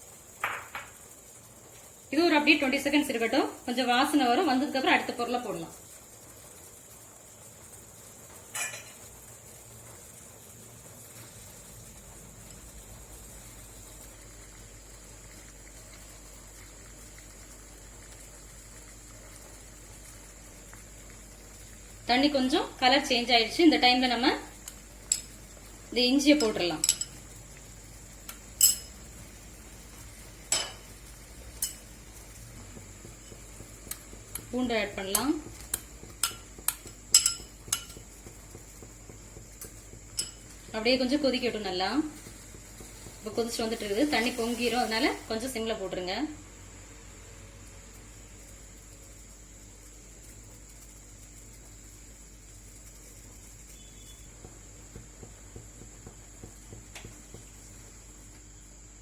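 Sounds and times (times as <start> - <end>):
water boiling in a pot: 0.0 - 59.0
metal utensil clinking on pot: 8.5 - 9.0, 26.4 - 27.2, 28.6 - 28.9, 30.5 - 30.8, 36.2 - 38.0, 40.2 - 40.5
metallic kitchenware clink: 8.5 - 9.0, 28.6 - 28.9, 30.5 - 30.8, 37.1 - 37.9.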